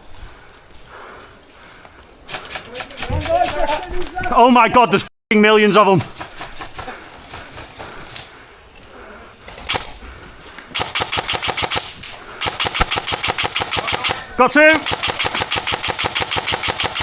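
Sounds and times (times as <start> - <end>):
airsoft guns firing bursts: 2.3 - 4.0, 5.9 - 8.3, 9.5 - 10.0, 10.7 - 17.0.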